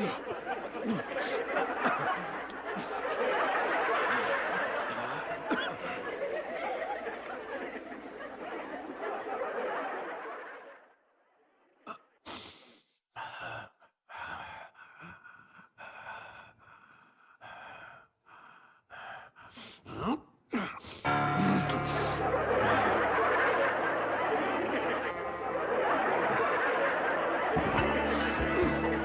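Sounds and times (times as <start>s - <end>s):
audience laughter: 0.0s - 11.1s, 21.1s - 29.0s
gasps: 11.9s - 22.8s
comedy sound effects: 21.1s - 29.0s.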